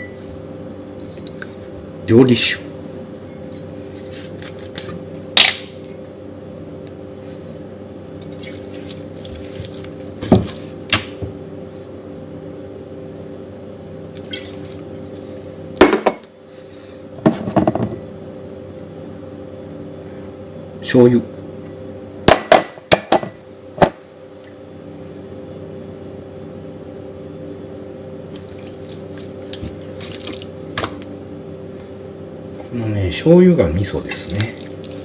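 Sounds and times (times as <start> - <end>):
liquid pouring and splashing: 34.1 - 35.0.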